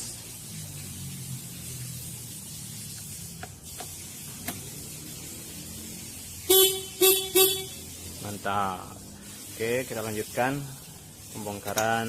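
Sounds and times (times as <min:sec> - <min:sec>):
scooter horn beeps: 0:06.5 - 0:07.9.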